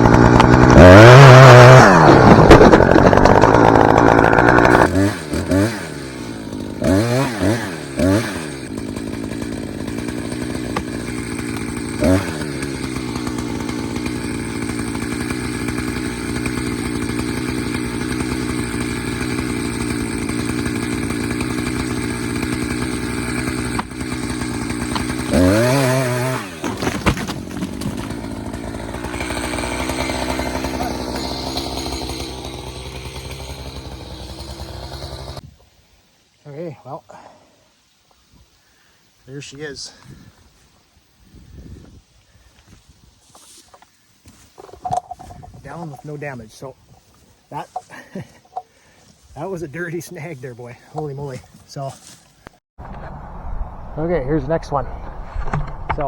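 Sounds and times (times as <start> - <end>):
chainsaw cutting wood: 0.0 - 35.5, 43.2 - 52.6.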